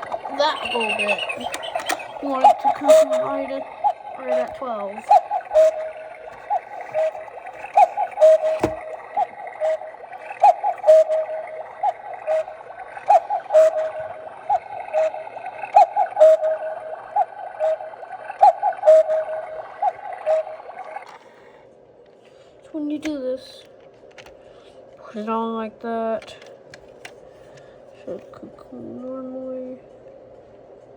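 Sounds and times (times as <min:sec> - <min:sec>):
electronic cuckoo call: 0:00.0 - 0:21.2.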